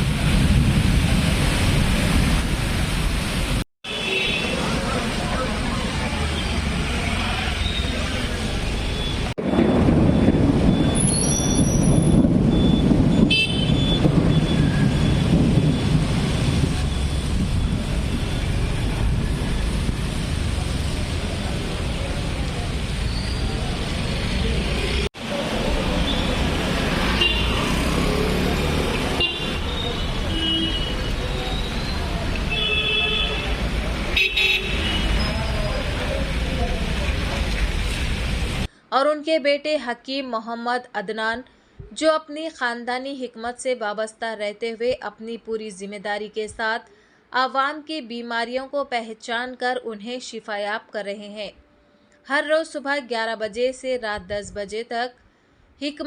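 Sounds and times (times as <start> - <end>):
rain: 0.0 - 38.7
road traffic: 0.0 - 38.9
wind: 0.0 - 56.0
vehicle horn toot: 3.8 - 4.6, 13.3 - 14.0, 27.2 - 27.6, 29.2 - 31.6, 32.5 - 33.6, 34.2 - 35.4.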